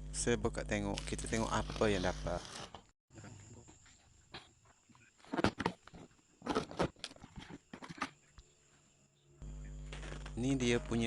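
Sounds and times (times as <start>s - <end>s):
steady low hum: 0.0s - 2.4s, 7.8s - 11.0s.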